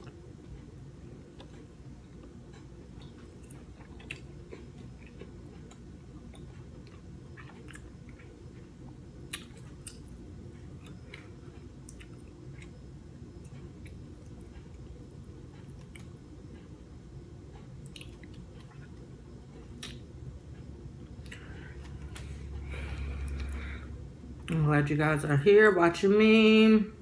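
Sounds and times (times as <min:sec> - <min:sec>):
low hum: 0:00.0 - 0:27.0
close chewing: 0:02.9 - 0:08.3.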